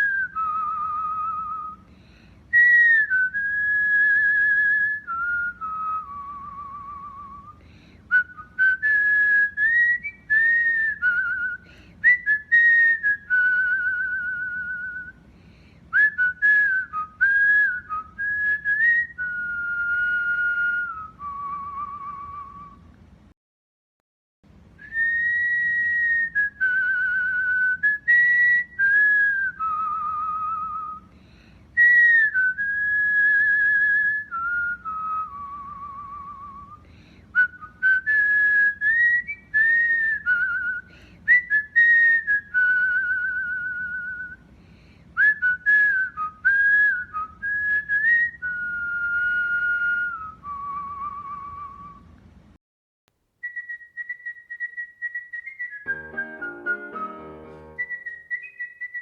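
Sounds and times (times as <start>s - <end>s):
cockatiel whistling: 53.4s - 59.0s.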